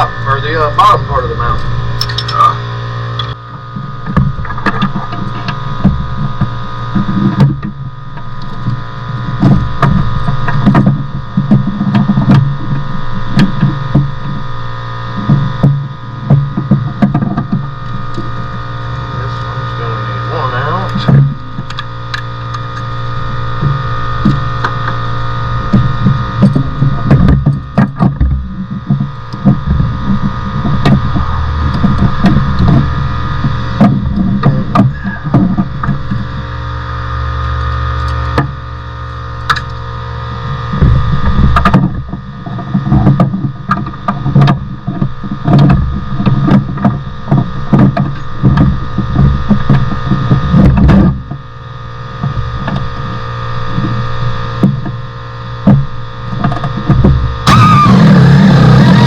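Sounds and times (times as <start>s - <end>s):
steady electrical hum: 0.0s - 59.0s
hand tools clanking on metal: 2.0s - 2.5s.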